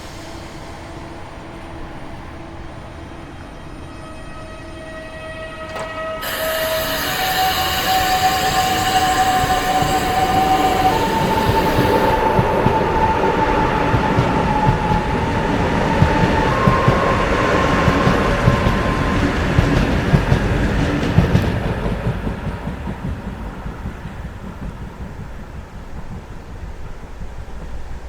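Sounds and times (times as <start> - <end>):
train rumble and wheel noise: 0.0 - 28.0
electric train motor whine: 3.2 - 24.6
rail clicks: 5.5 - 27.9.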